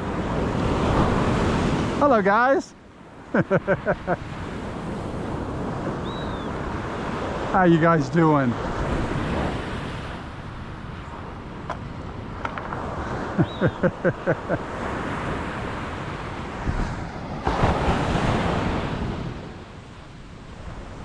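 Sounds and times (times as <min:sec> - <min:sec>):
surf washing on a beach: 0:00.0 - 0:21.0.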